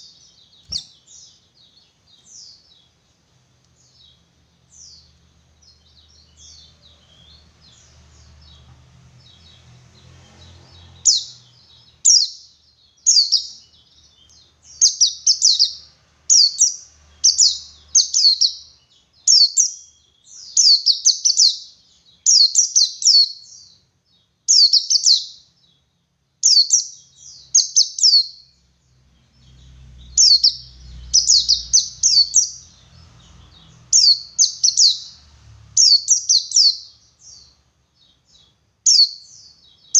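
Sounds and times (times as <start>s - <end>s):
bird singing high downward phrases: 0.0s - 39.9s.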